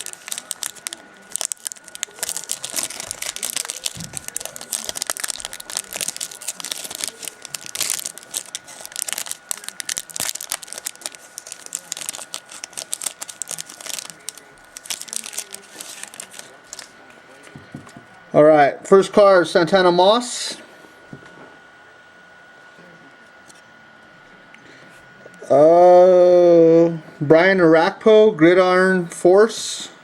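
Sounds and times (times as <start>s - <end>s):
wrapper crinkling and tearing: 0.0s - 17.8s.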